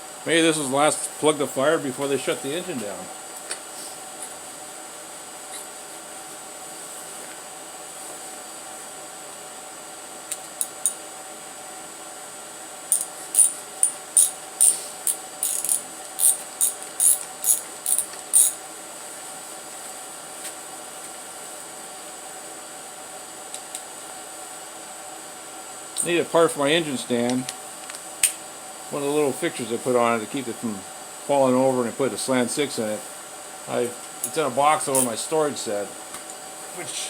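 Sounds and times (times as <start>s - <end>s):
steady background hum: 0.0s - 37.0s
socket ratchet clicking: 10.6s - 11.0s, 12.9s - 18.6s.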